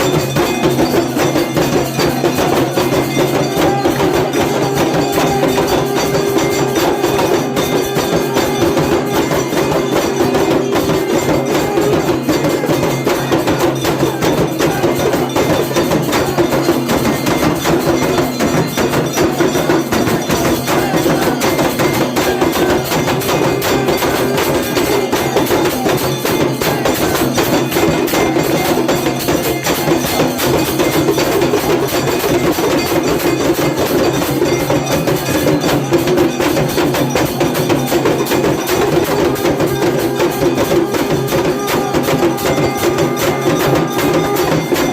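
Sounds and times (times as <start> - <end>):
bells and metal percussion: 0.0 - 44.9.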